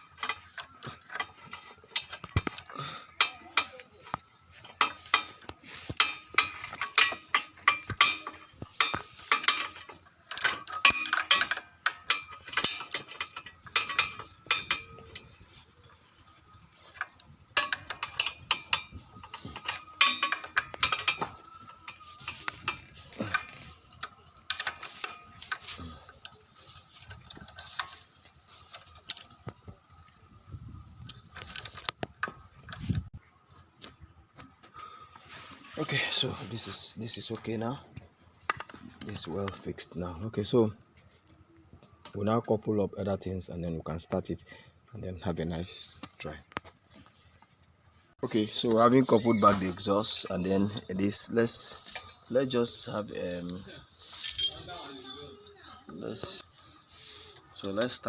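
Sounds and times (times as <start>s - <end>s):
hand tool clicking on bolts: 0.0s - 30.2s.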